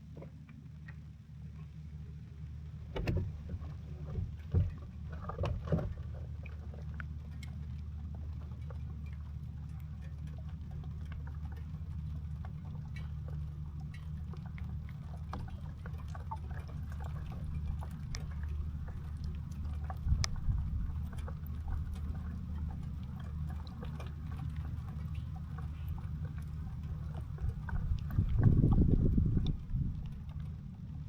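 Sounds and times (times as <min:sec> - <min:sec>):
low water rumble: 0:00.0 - 0:31.0
water drips and taps: 0:12.4 - 0:30.5.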